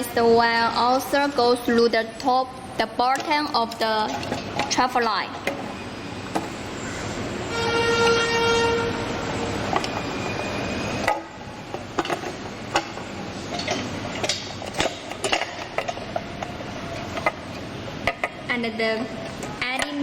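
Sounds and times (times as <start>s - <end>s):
loud horn-like tone: 7.4s - 9.5s
metal parts clicking and knocking: 11.0s - 18.4s.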